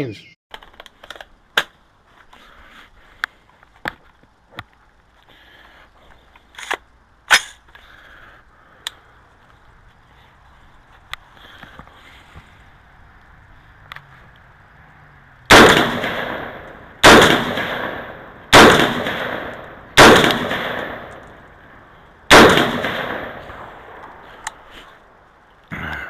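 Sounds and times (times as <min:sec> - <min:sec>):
rifle shots with echo: 0:15.5 - 0:24.7.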